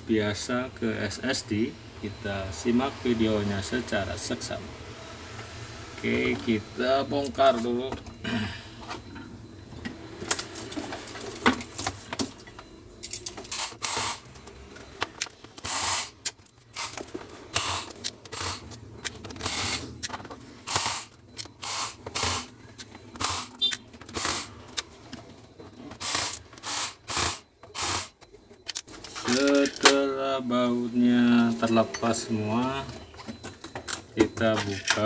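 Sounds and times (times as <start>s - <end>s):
screwdriver removing screws: 26.0s - 28.1s.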